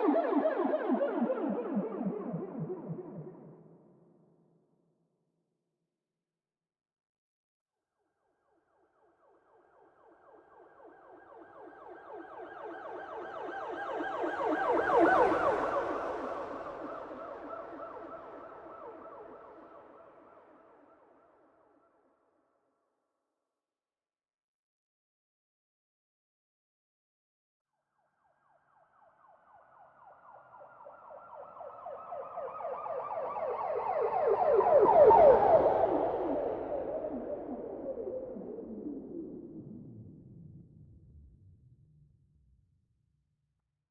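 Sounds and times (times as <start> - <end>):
police siren yelping: 30.6 - 37.7.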